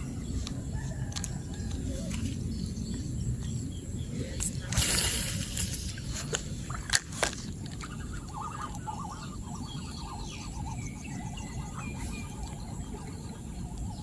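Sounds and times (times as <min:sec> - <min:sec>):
steady low rumble: 0:00.0 - 0:14.0
small animal calls chattering: 0:07.7 - 0:14.0.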